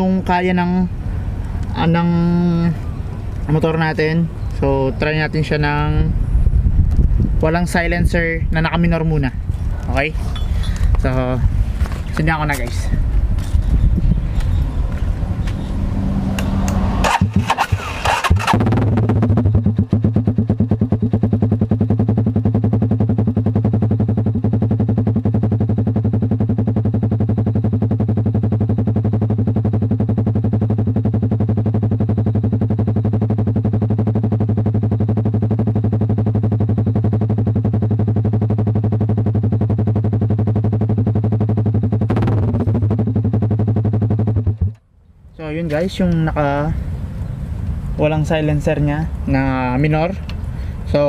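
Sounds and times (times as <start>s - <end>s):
motorcycle engine idling: 17.1s - 45.0s, 45.7s - 51.0s.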